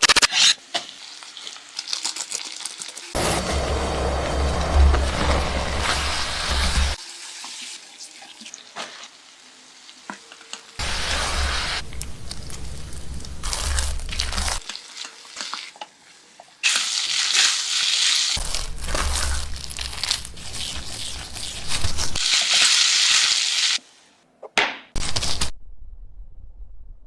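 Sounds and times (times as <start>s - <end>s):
loud cooking hiss: 3.2s - 8.1s, 10.8s - 12.0s, 22.2s - 23.9s.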